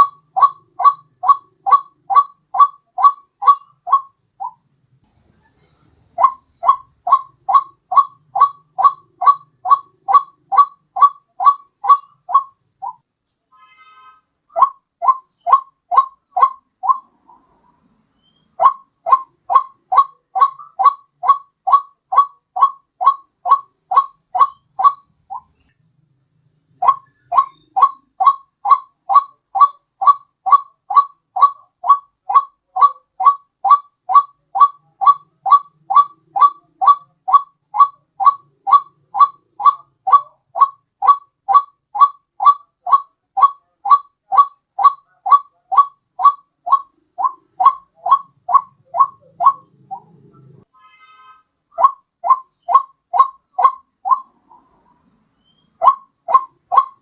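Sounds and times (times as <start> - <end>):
repeated pitched bird call: 0.0 - 4.6, 5.4 - 13.0, 13.7 - 25.8, 26.7 - 57.0.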